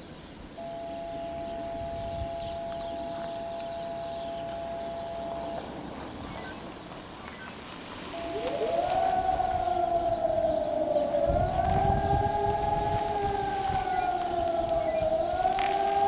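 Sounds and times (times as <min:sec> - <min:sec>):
warning siren howling: 0:00.6 - 0:06.7, 0:07.8 - 0:16.0.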